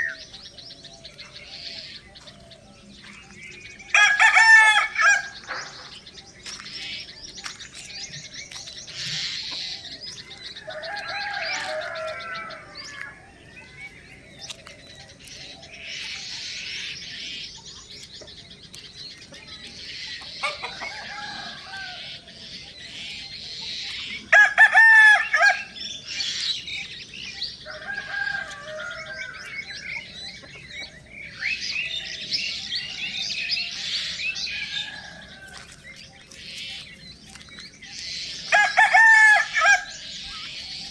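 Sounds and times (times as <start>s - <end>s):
chickens clucking: 0.0s - 40.9s
small birds chirping: 0.0s - 40.9s
rooster crowing: 3.9s - 5.4s, 10.6s - 13.2s, 20.4s - 22.2s, 24.3s - 25.7s, 27.7s - 29.6s, 38.5s - 40.0s.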